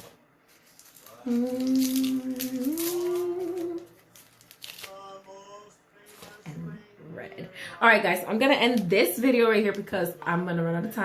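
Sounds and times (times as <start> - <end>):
packaging crinkling and clicking: 0.6 - 5.0
woman humming: 1.2 - 3.9.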